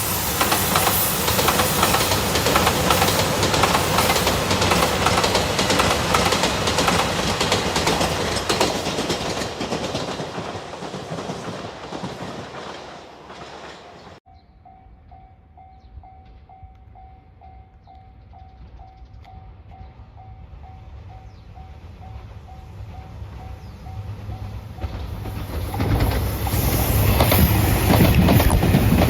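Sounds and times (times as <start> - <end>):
train wheels clattering over rails: 0.0 - 14.2, 22.1 - 29.0.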